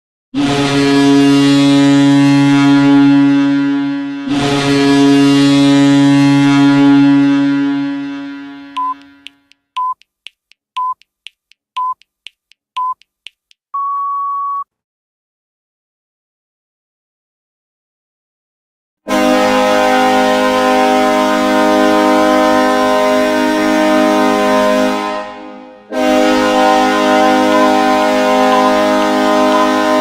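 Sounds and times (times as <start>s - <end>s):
goal horn blasts: 0.4s - 9.4s, 19.1s - 30.0s
short timer beeps: 8.8s - 11.2s, 11.8s - 14.6s
timer ticking: 8.8s - 13.8s.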